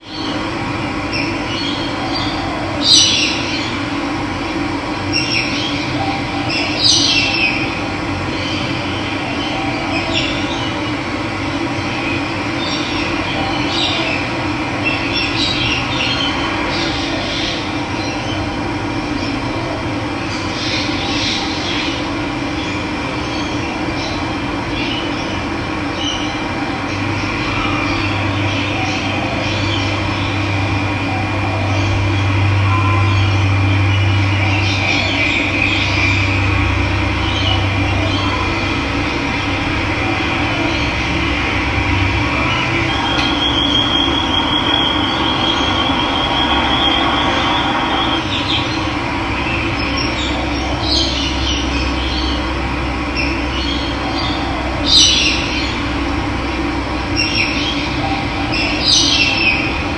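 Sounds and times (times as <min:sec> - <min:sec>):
birds chirping: 0:20.2 - 0:59.9.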